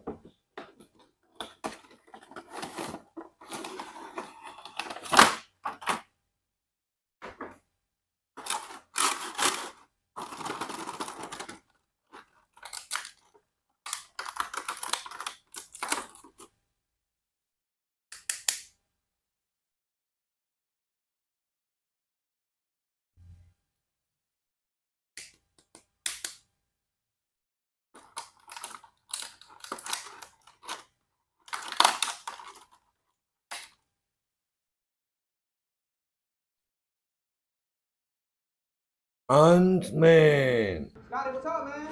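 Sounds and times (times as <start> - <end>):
toy packaging rustling and scraping: 0.6 - 6.1, 8.4 - 16.5, 28.0 - 33.1.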